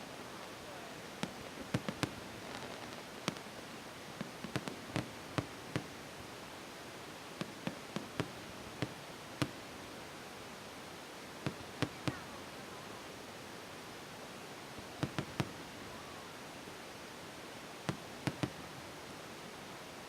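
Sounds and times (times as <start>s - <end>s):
steady hiss: 0.0s - 20.0s
distant fireworks bangs and pops: 1.0s - 6.4s, 7.1s - 9.8s, 11.4s - 12.6s, 14.8s - 16.0s, 17.9s - 18.7s.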